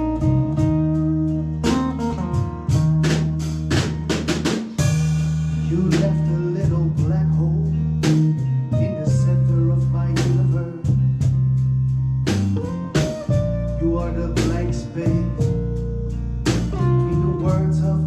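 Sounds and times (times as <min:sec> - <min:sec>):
guitar playing: 0:00.0 - 0:18.0
low bass line: 0:00.0 - 0:18.0.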